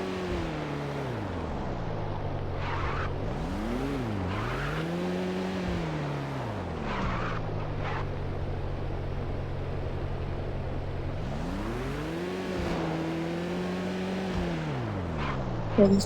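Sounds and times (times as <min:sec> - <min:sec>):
engine revving: 0:02.6 - 0:07.4, 0:11.2 - 0:16.0.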